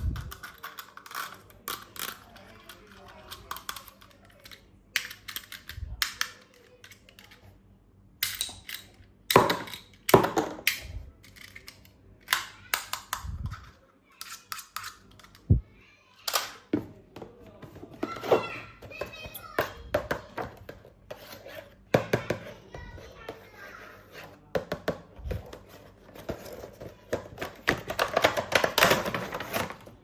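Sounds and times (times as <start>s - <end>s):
plastic toys and packaging rustling: 0.0s - 7.6s, 8.4s - 30.0s.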